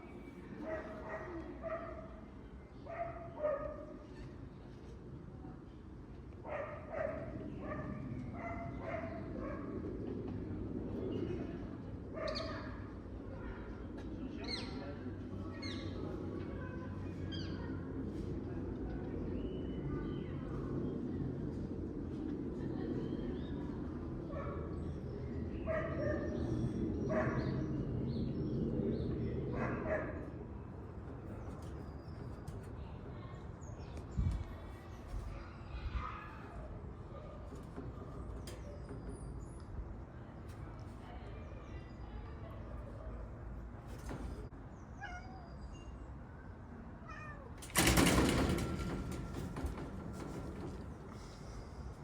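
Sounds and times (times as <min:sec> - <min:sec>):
cat meowing: 0:45.0 - 0:45.6, 0:47.0 - 0:47.6
cat meowing and chirping: 0:45.0 - 0:45.9
loud rustling knock: 0:47.6 - 0:51.6.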